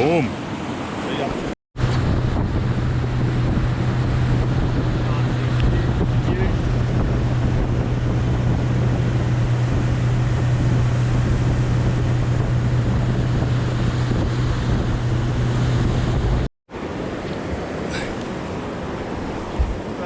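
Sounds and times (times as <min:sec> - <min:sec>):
boat motor humming: 0:00.0 - 0:20.0
water: 0:00.0 - 0:20.0
wind noise on microphone: 0:01.4 - 0:20.0.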